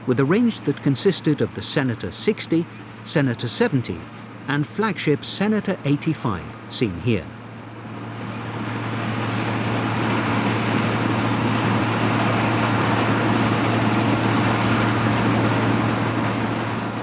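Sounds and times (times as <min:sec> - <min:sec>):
combine harvester running: 0:00.0 - 0:16.9.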